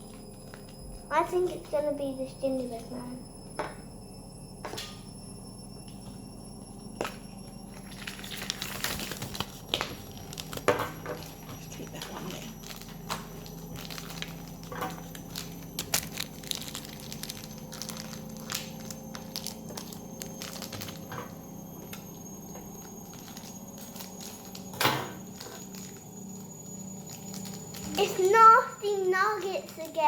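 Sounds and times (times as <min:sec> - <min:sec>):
plastic packaging crinkling and tearing: 0:07.8 - 0:21.1, 0:23.1 - 0:26.1, 0:26.9 - 0:30.0.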